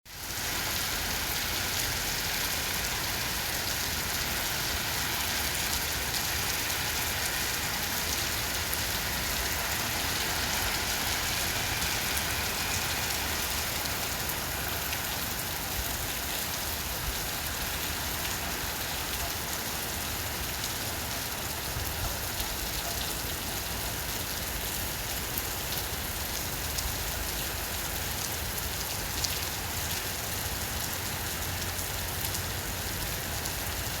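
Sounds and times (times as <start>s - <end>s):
heavy rain hissing: 0.2s - 19.1s.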